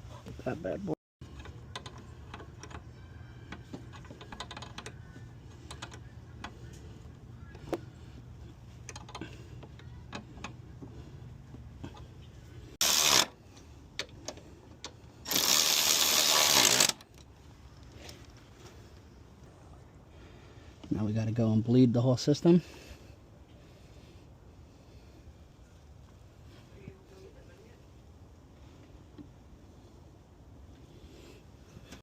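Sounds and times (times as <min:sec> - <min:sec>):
hand tools clicking on car parts: 0:03.5 - 0:06.5, 0:08.8 - 0:10.6.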